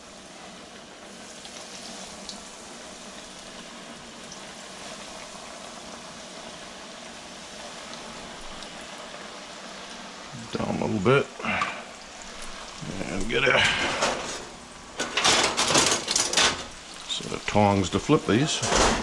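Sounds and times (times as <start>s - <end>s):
fish sizzling in hot oil: 0.0s - 18.6s
faint crackles: 11.3s - 18.8s.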